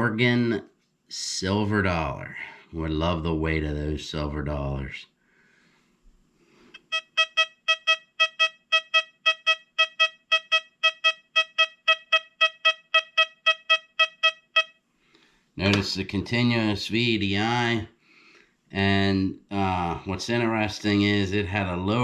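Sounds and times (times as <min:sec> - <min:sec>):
metal detector short beeps: 0:06.8 - 0:14.8.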